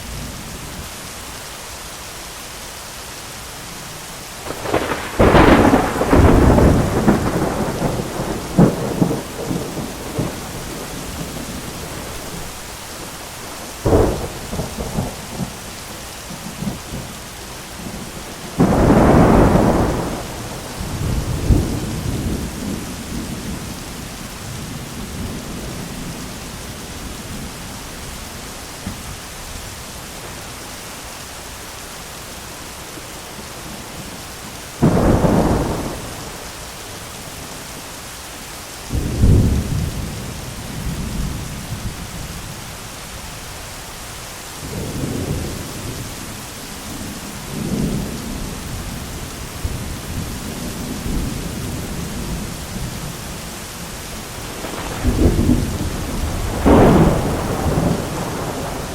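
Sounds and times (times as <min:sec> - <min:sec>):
heavy rain: 0:00.0 - 0:58.9
rolling thunder: 0:04.4 - 0:15.7, 0:17.8 - 0:27.8, 0:34.8 - 0:36.6, 0:38.9 - 0:42.5, 0:44.6 - 0:46.2, 0:46.8 - 0:58.9
sharp thunder crack: 0:04.5 - 0:12.5, 0:18.5 - 0:22.8, 0:34.8 - 0:36.5, 0:54.4 - 0:58.9.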